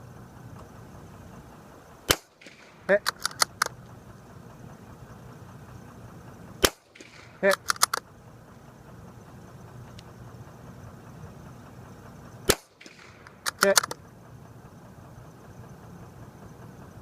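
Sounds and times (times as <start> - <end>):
rifle shot crack: 2.0 - 3.7, 6.6 - 8.0, 12.5 - 14.0.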